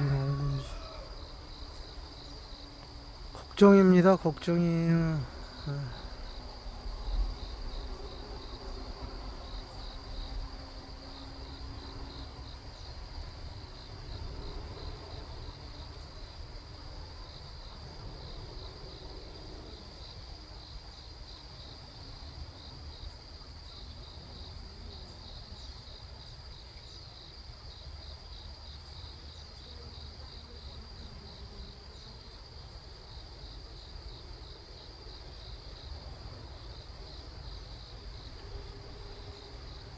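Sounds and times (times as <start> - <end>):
insects chirping: 0.0 - 39.9.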